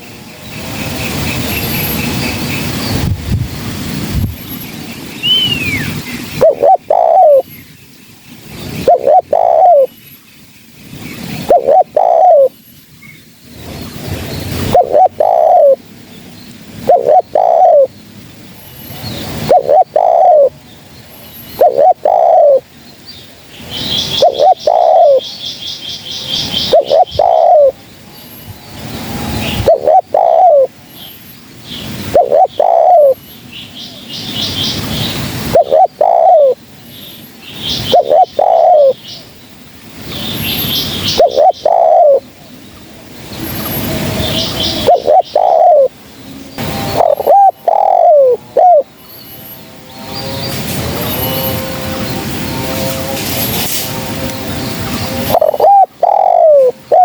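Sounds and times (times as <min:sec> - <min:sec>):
dove cooing: 0:05.3 - 0:07.5, 0:08.6 - 0:09.9, 0:11.2 - 0:12.6, 0:14.5 - 0:15.8, 0:16.8 - 0:18.0, 0:19.2 - 0:20.6, 0:21.5 - 0:22.7, 0:23.8 - 0:25.3, 0:26.4 - 0:27.8, 0:29.3 - 0:30.8, 0:32.0 - 0:33.2, 0:34.7 - 0:36.6, 0:37.7 - 0:39.0, 0:41.0 - 0:42.3, 0:43.8 - 0:46.0, 0:46.6 - 0:49.0, 0:50.0 - 0:57.0.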